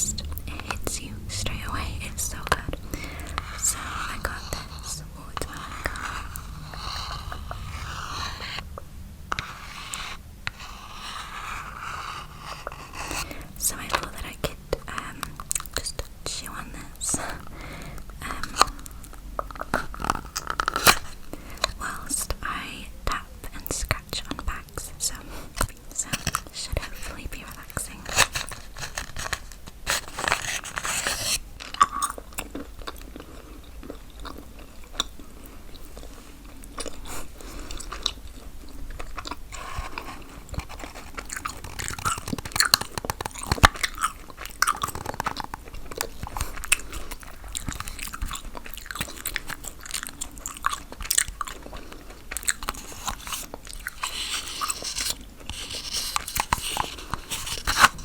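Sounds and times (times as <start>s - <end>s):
gum chewing clicks and smacks: 12.5s - 24.9s, 25.5s - 58.0s.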